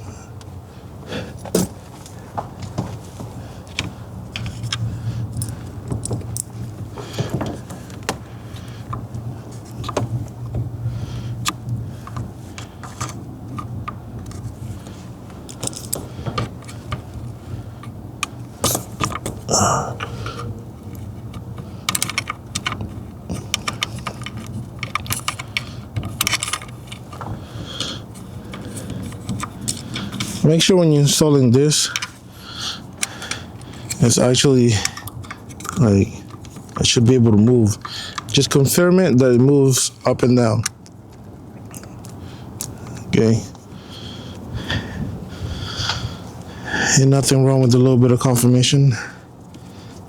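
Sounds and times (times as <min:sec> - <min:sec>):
steady low hum: 0:00.0 - 0:50.0
small metal parts clicking and rattling: 0:03.6 - 0:10.6, 0:11.3 - 0:30.5, 0:31.7 - 0:38.8.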